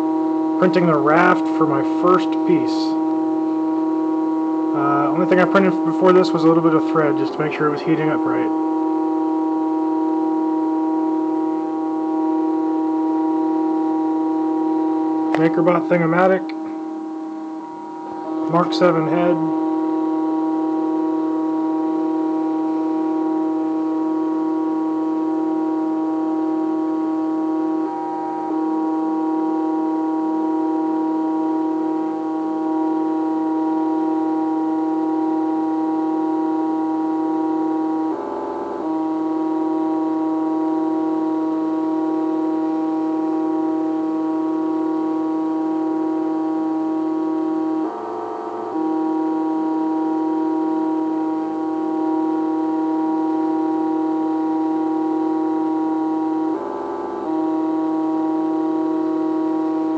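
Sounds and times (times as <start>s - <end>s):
stepper motors whining: 0.0s - 48.0s.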